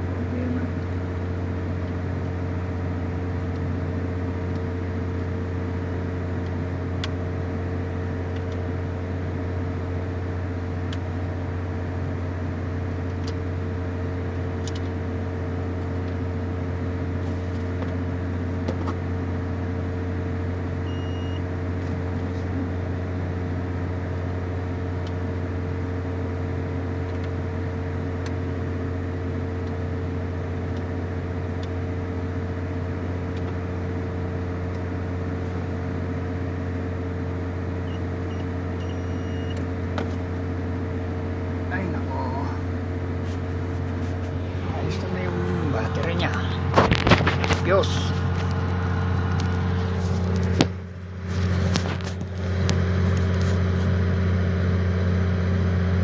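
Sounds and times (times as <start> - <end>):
engine idling: 0.0 - 56.0.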